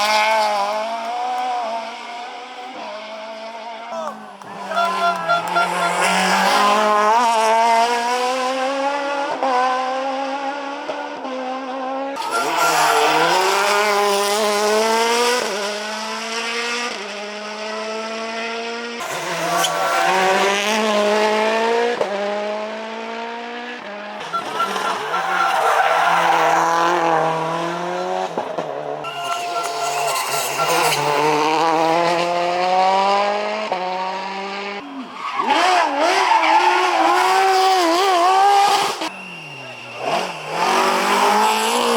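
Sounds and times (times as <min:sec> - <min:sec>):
rally car engines accelerating: 0:00.0 - 0:41.9
tyres squealing: 0:03.9 - 0:07.4, 0:12.2 - 0:14.3, 0:24.2 - 0:27.4, 0:29.0 - 0:32.0.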